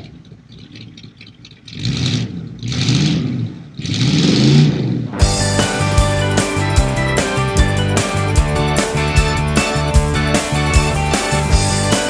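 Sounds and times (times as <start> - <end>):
rock band music: 5.2 - 12.0.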